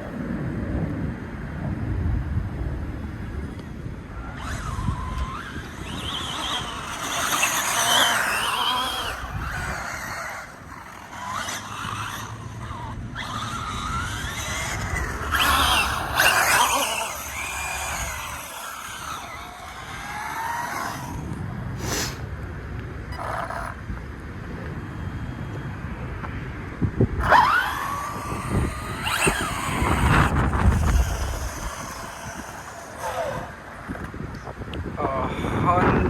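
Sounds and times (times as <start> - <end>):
electric motor whining: 3.6 - 22.2, 27.2 - 35.5.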